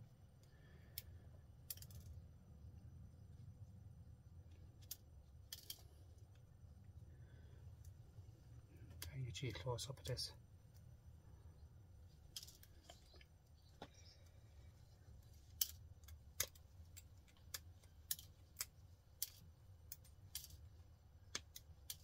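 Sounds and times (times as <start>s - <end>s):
faint low hum: 0.0s - 22.0s.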